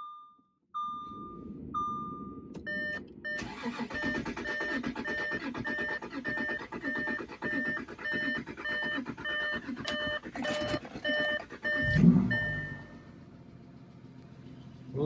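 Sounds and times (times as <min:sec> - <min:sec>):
dashboard warning chime beeping: 0:00.0 - 0:13.2
diesel engine cranking: 0:01.1 - 0:15.0
engine idling: 0:03.3 - 0:15.0.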